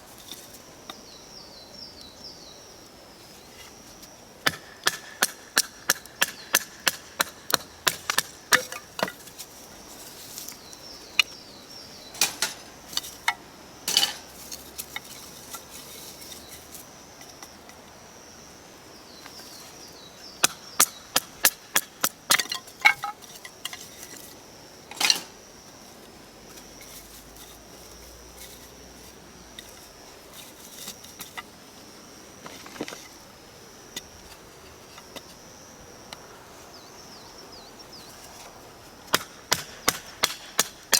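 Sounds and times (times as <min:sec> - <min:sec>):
knife chopping wood: 0:39.1 - 0:40.9.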